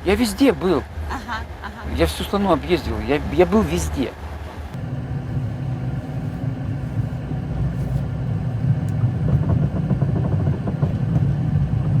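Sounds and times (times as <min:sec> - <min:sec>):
train rumble: 0:03.0 - 0:12.0.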